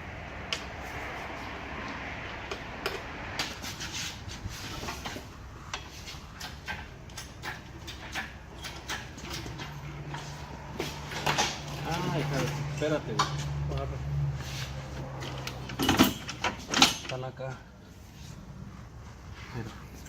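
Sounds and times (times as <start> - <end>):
light clinks and knocks: 15.2 - 17.2.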